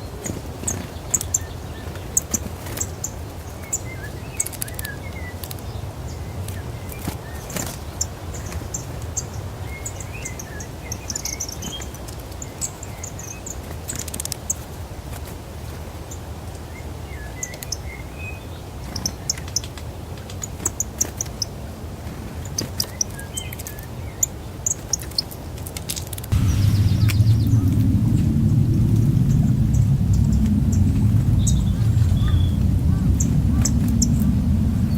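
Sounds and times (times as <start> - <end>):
small birds chirping: 0.0 - 14.6, 22.3 - 27.7, 30.7 - 34.9
low background rumble: 26.3 - 34.9.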